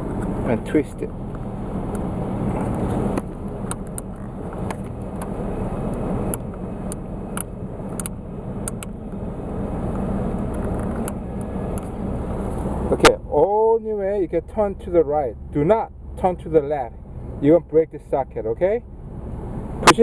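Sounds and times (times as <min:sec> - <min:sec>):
van engine humming: 0:00.0 - 0:20.0.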